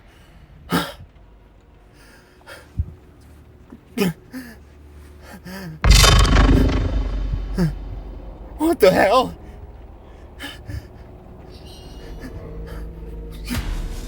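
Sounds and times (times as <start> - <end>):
loud rushing noise: 5.9 - 9.2.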